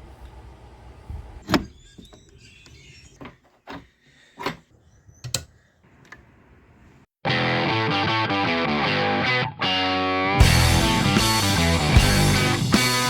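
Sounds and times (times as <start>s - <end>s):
faint high squeaks: 1.4s - 5.4s.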